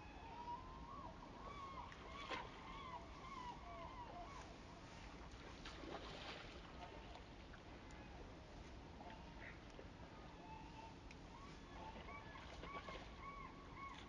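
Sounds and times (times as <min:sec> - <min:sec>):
waterfowl calling: 0:10.3 - 0:14.0.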